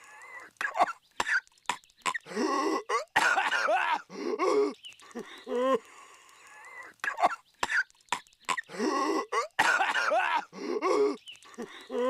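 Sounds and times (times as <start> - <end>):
cartoon character coughing: 0.6 - 1.4, 2.8 - 4.8, 9.3 - 11.2.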